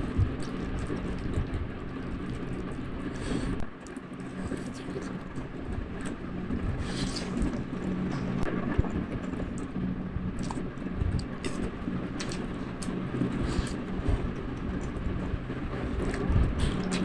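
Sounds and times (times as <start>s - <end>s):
chewing and slurping noodles: 0.0s - 17.0s
low steady hum: 0.0s - 17.0s
mouth clicks and smacks: 10.4s - 15.0s.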